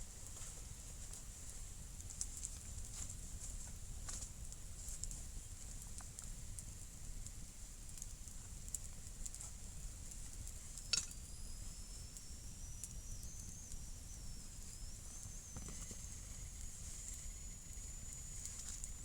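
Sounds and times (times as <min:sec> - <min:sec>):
campfire crackling: 0:01.1 - 0:19.0
steady hiss: 0:09.6 - 0:19.0
high rising whistle: 0:10.6 - 0:19.0.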